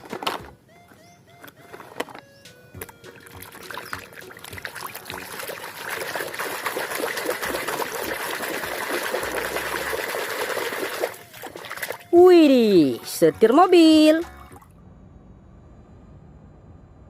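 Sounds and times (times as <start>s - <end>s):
water trickling and splashing: 2.8s - 12.2s.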